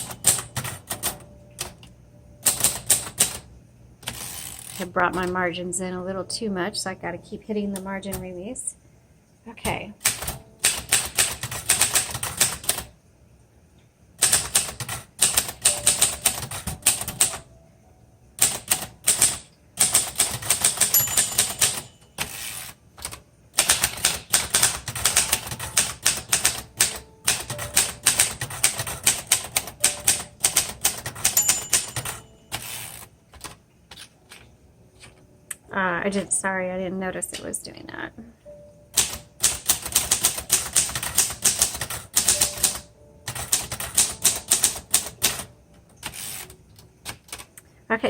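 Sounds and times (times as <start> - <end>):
typewriter keys striking: 0.0 - 5.4, 10.0 - 12.9, 14.2 - 17.4, 18.4 - 34.4, 39.0 - 47.6.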